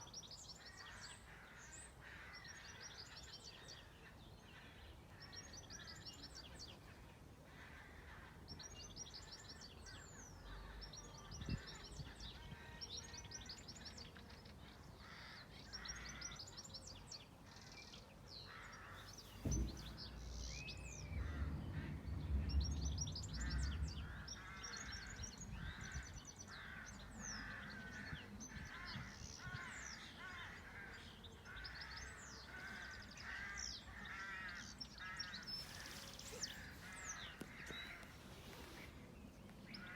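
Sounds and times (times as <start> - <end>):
birds singing and chirping: 8.0 - 39.9
low thump: 19.2 - 20.6.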